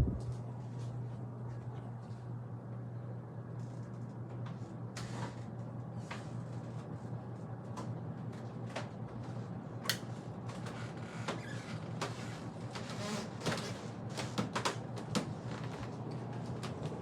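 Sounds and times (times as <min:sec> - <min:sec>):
ceiling fan motor hum: 0:00.0 - 0:17.0
fan clicking and knocking: 0:13.4 - 0:17.0.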